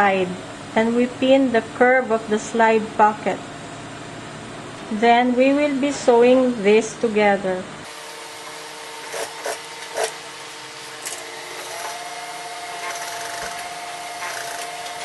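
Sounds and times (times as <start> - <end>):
sewing machine motor whine: 10.9 - 15.0
sewing machine clicks: 14.2 - 14.7.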